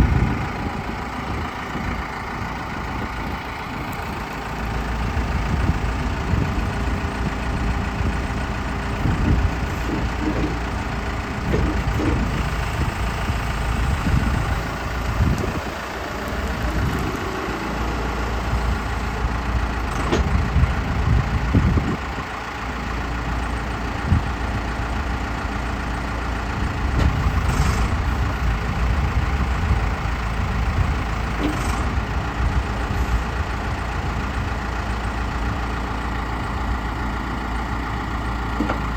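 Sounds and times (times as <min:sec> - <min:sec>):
diesel engine revving: 0:00.0 - 0:38.9.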